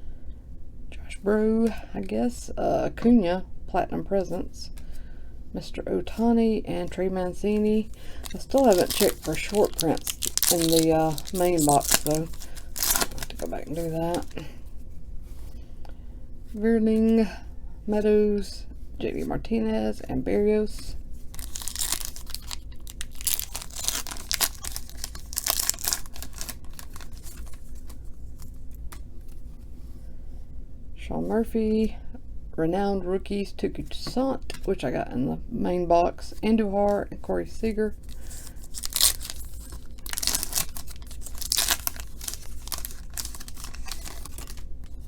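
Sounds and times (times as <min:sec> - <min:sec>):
wrapper tearing and crinkling: 0:07.6 - 0:14.4, 0:21.2 - 0:29.0, 0:38.0 - 0:45.0.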